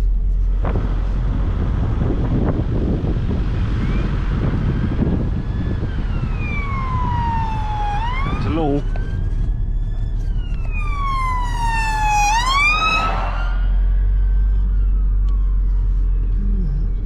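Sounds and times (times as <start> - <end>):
low rumble: 0.0 - 17.0
siren wailing: 3.6 - 17.0.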